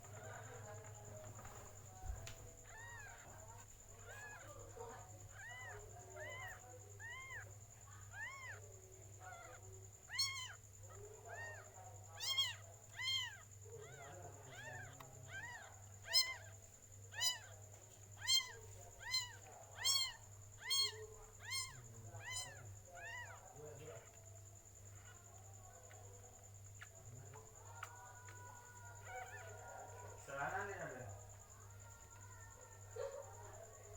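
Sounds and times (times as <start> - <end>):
kitten mewing: 2.6 - 17.6, 18.2 - 24.2.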